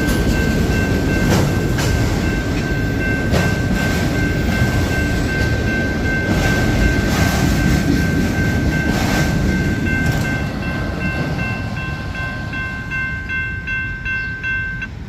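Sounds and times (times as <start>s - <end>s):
crossing warning bells ringing: 0.0s - 15.0s
freight train cars rolling: 0.0s - 15.0s.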